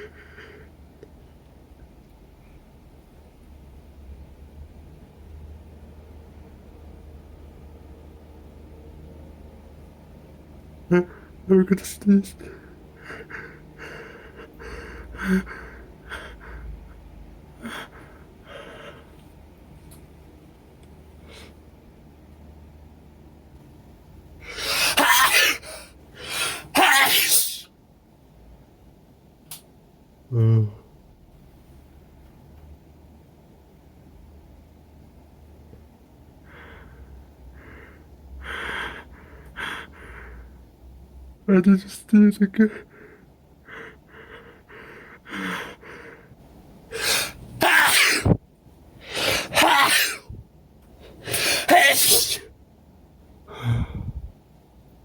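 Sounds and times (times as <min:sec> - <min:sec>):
person gasping: 0:12.4 - 0:16.7, 0:37.6 - 0:40.5, 0:42.6 - 0:46.3, 0:53.5 - 0:54.3
person sneezing loudly: 0:24.5 - 0:27.7, 0:46.9 - 0:48.4, 0:49.1 - 0:50.4, 0:51.2 - 0:52.5
short breath: 0:53.5 - 0:54.3.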